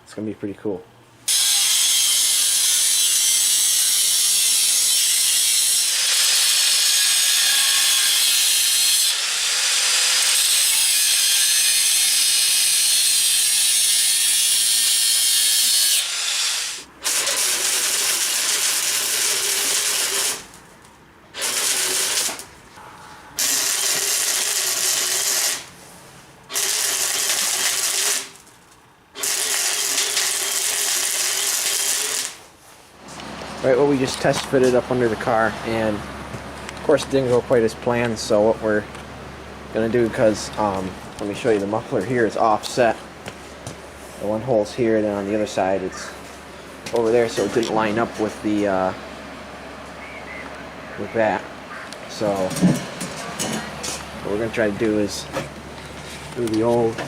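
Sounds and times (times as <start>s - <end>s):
power tool cutting steel pipe: 1.3s - 20.5s, 21.4s - 22.4s, 23.4s - 25.7s, 26.5s - 28.4s, 29.2s - 32.4s.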